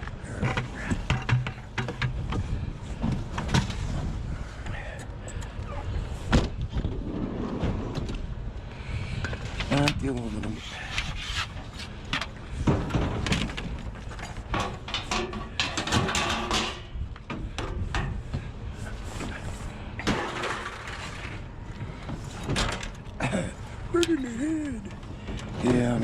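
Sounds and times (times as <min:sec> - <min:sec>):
scrap knocks and clanks: 0:00.2 - 0:04.0, 0:09.2 - 0:18.5, 0:19.1 - 0:23.0.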